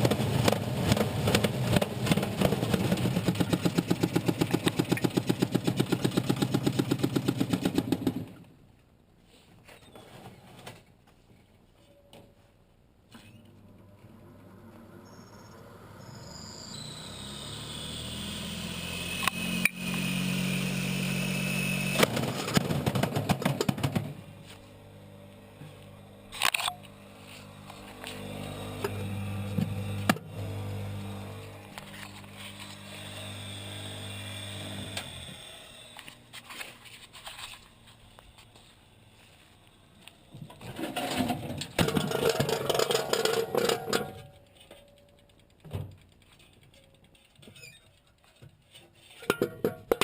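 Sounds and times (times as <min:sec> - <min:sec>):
washing machine spinning: 0:16.7 - 0:26.2, 0:26.8 - 0:31.6, 0:32.4 - 0:35.9.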